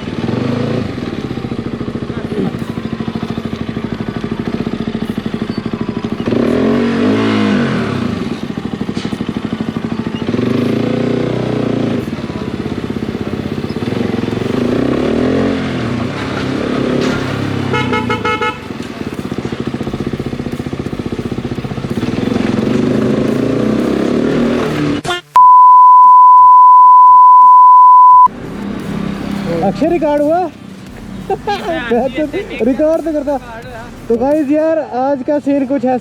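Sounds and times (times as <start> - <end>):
motorcycle engines idling: 0.0 - 25.0, 28.3 - 36.0
motorcycle engine revving: 0.0 - 25.1, 28.2 - 34.4
vehicle horn pulses: 17.2 - 18.8.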